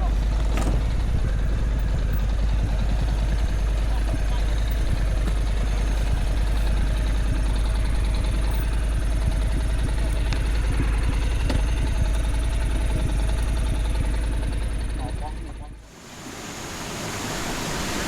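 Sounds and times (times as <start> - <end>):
wind rumble on microphone: 0.0 - 14.1
motorbike running: 0.0 - 15.9.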